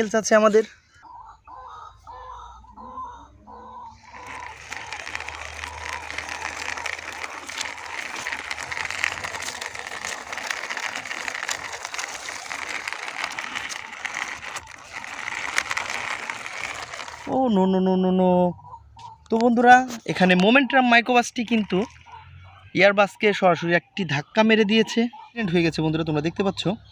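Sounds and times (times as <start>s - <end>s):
toy vehicle wheels rattling: 3.8s - 17.8s, 19.3s - 22.7s.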